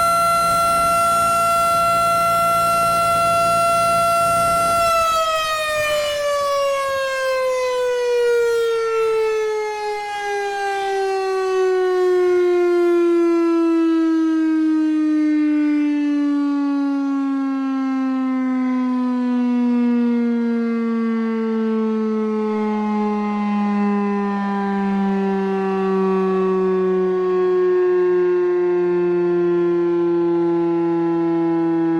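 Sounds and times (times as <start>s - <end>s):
warning siren winding down: 0.0s - 31.9s.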